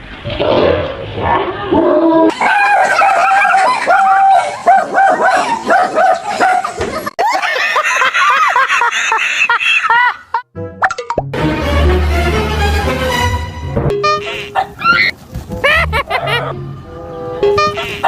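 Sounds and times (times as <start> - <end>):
dog barking and yipping: 2.3 - 6.8, 14.2 - 16.5.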